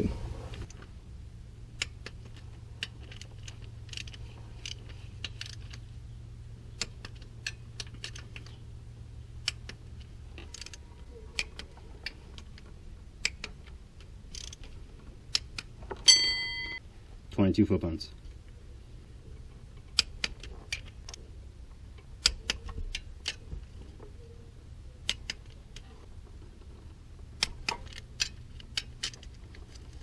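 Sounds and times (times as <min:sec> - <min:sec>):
low steady hum: 0:00.0 - 0:30.0
metal hand tools clinking: 0:16.1 - 0:16.8.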